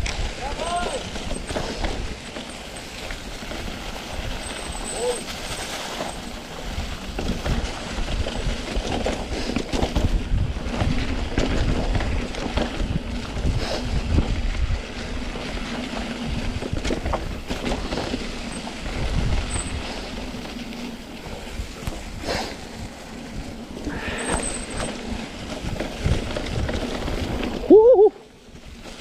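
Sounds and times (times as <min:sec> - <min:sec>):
bike frame and tyres rattling: 0:00.0 - 0:29.0
wind buffeting microphone: 0:06.4 - 0:28.9.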